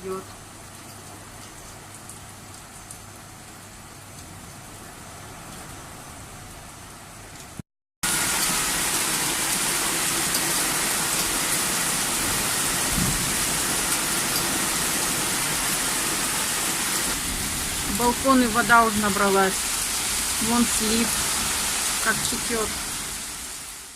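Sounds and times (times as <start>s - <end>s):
heavy rain pouring: 0.0s - 23.9s.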